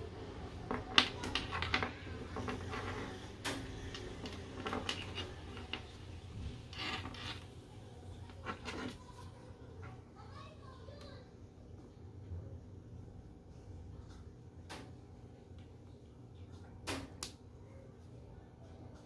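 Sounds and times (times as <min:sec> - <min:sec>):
small objects tapping and rubbing: 0:00.3 - 0:07.6, 0:08.2 - 0:09.2.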